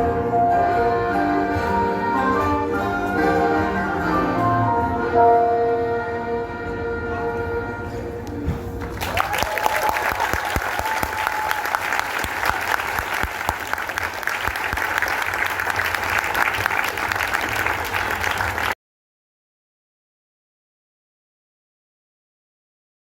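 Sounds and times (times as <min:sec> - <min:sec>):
ensemble held chord: 0:00.0 - 0:08.4
audience applause: 0:08.8 - 0:18.8.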